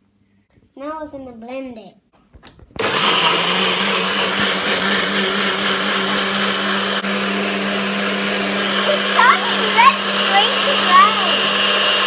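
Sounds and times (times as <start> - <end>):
electric blender running: 2.8 - 12.0.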